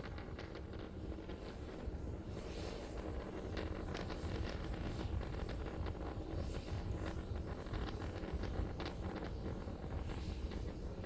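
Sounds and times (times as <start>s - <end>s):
crackles: 0.0s - 1.9s
wind noise on microphone: 0.0s - 11.0s.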